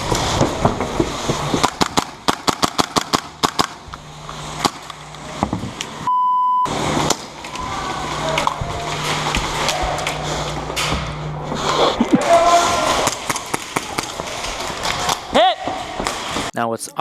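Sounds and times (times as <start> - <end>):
airsoft guns firing: 1.5 - 3.8, 4.6 - 4.9, 12.8 - 14.4
censor bleep: 6.1 - 6.7.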